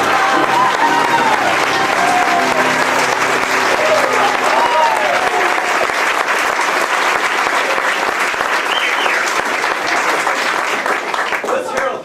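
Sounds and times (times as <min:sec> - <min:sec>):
crowd whistle: 0:00.0 - 0:05.9, 0:08.4 - 0:09.4
audience applauding: 0:00.0 - 0:12.0.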